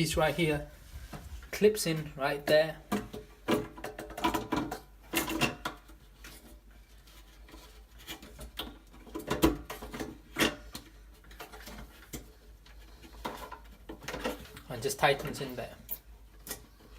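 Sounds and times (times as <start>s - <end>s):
plastic parts clicking and knocking: 2.4s - 6.5s, 7.5s - 15.6s.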